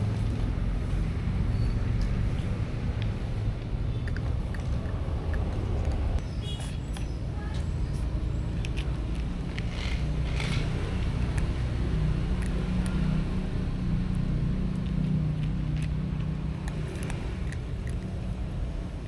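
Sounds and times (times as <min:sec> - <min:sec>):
small clicks: 0:16.6 - 0:18.4.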